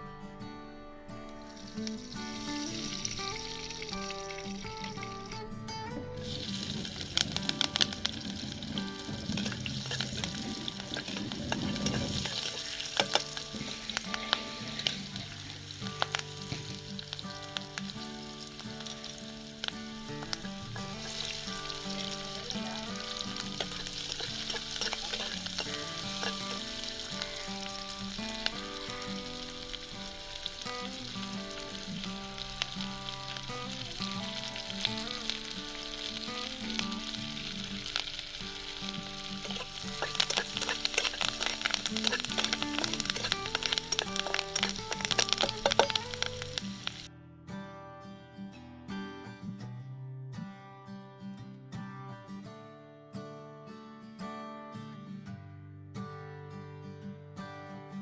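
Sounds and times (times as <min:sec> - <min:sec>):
background music: 0:00.0 - 0:47.1
food sizzling in oil: 0:01.3 - 0:47.1
utensil clicking and scraping: 0:39.4 - 0:46.7.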